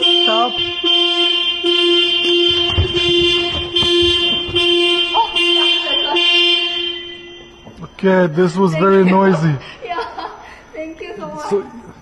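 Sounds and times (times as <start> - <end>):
car alarm horn honks: 0.0 - 9.0.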